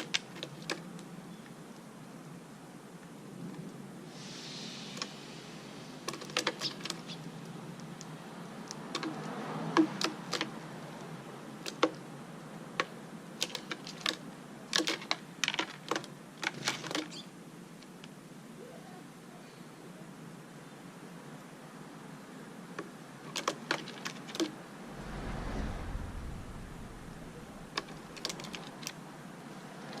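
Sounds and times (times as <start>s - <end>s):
low steady hum: 24.8s - 28.5s.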